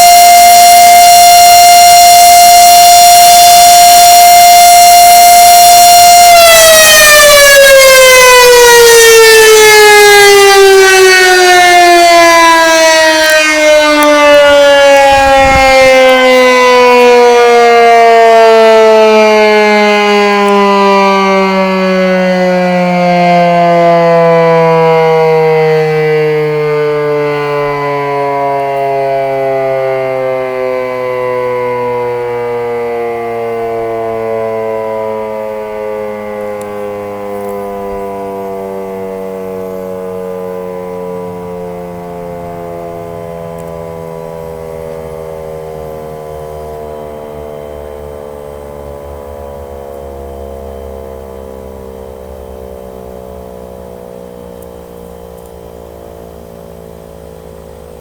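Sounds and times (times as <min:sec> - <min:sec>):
siren winding down: 0:00.0 - 0:58.0
low hum: 0:11.2 - 0:18.7.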